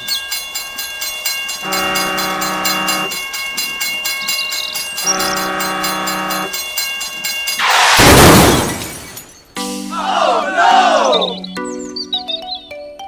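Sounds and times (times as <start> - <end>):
train horn blasts: 1.6 - 3.2, 5.0 - 6.5.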